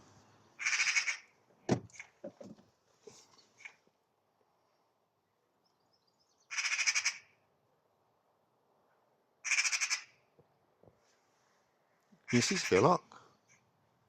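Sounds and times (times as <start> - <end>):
magpie rattling chatter calls: 0.6 - 1.3, 6.5 - 7.3, 9.4 - 10.2.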